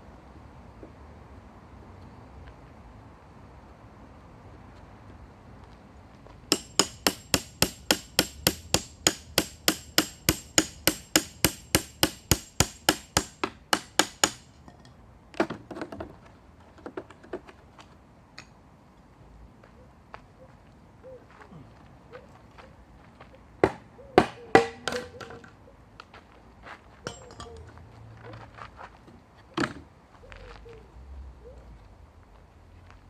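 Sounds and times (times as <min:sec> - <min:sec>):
hammer striking steel chisel: 0:06.5 - 0:14.7, 0:27.1 - 0:27.6.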